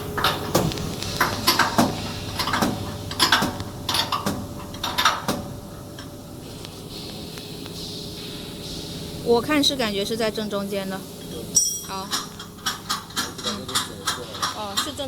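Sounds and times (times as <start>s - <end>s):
metallic clinks and knocks: 11.6s - 15.0s.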